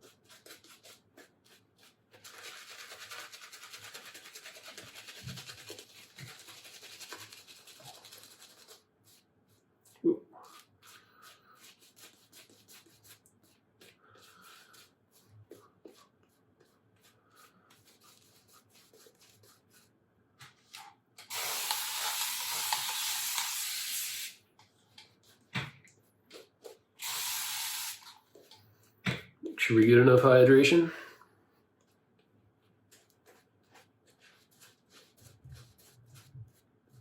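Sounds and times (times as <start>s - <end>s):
shaving brush swirling in soap: 0.0s - 20.0s, 32.9s - 37.0s
water running from tap: 21.3s - 24.3s, 27.0s - 28.1s.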